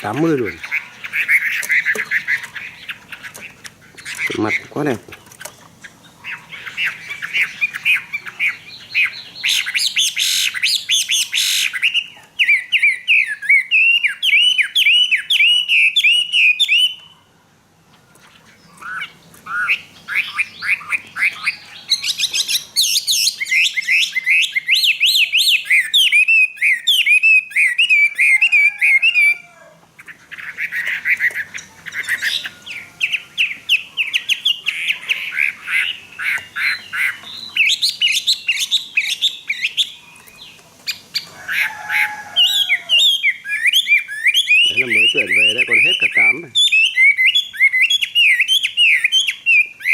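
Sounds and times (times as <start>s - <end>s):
bird singing whistled notes: 6.3s - 17.2s, 18.6s - 29.4s, 30.4s - 41.3s, 42.5s - 49.9s.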